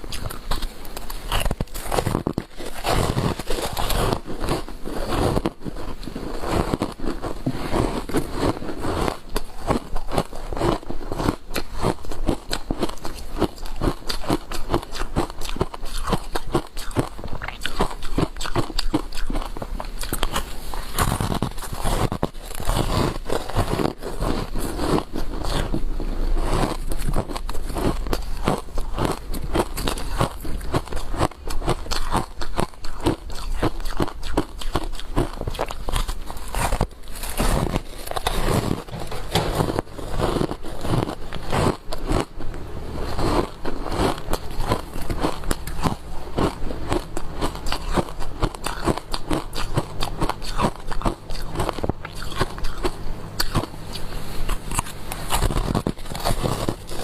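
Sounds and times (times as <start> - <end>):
crunching and chewing ice: 0.0 - 57.0.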